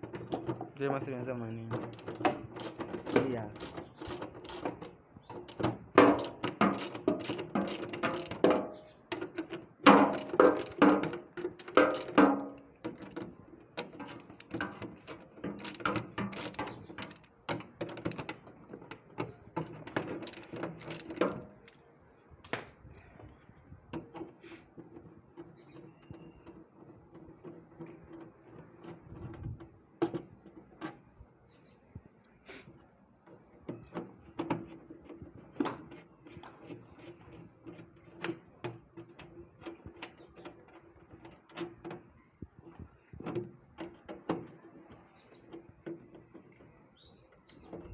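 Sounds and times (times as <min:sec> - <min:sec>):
mechanical clicking and clanking: 0:01.7 - 0:21.8.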